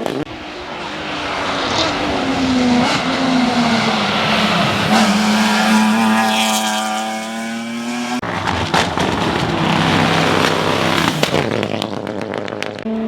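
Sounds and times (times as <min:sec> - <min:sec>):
race car engine at high revs: 0:00.0 - 0:13.0
engine pops: 0:08.2 - 0:12.9.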